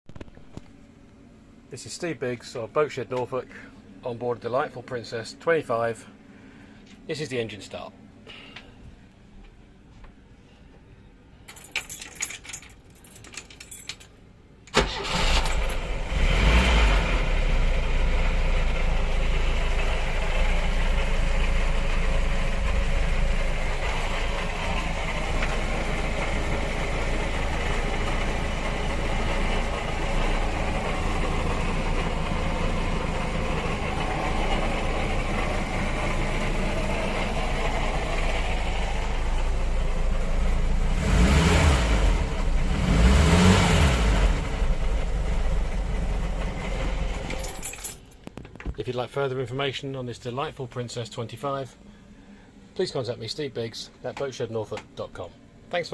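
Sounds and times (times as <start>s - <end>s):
boat engine starting and idling: 14.7s - 47.6s.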